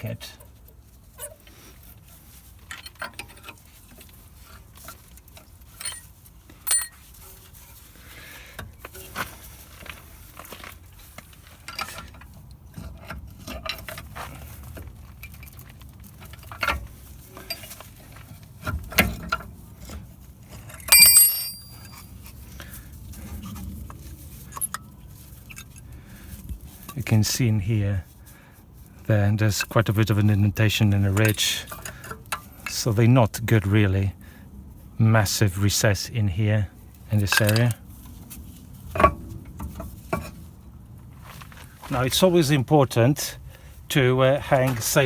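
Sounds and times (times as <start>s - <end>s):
ringing metallic clink: 20.8s - 22.0s.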